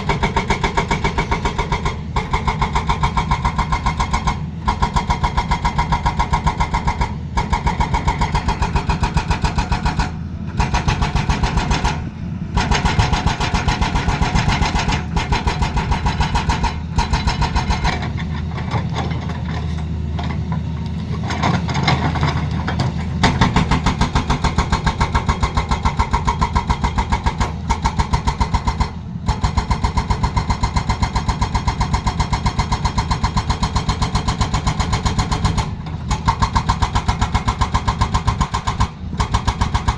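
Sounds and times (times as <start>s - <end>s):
hydraulic breaker hammering: 0.0s - 19.3s, 21.3s - 39.9s
diesel engine running: 0.0s - 39.9s.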